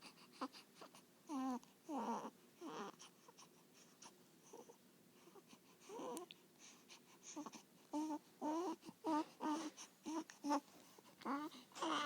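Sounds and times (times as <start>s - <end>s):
baby squeaking and babbling: 11.3s - 12.0s.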